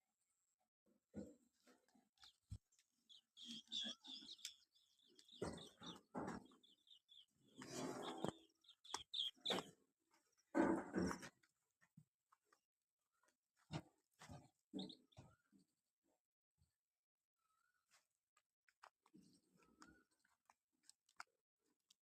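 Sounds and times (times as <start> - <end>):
birds chirping: 2.2 - 11.1, 14.2 - 15.6.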